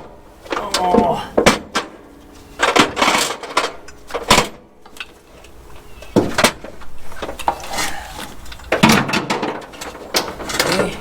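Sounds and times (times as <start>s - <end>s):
tools knocking and clanking: 8.5s - 11.0s.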